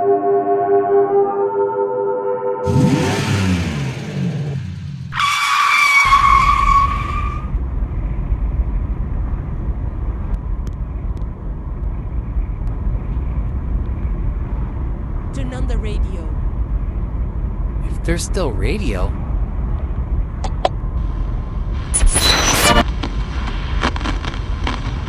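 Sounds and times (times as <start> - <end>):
car engine rumbling: 2.7 - 25.0
car tires screeching: 5.1 - 7.6.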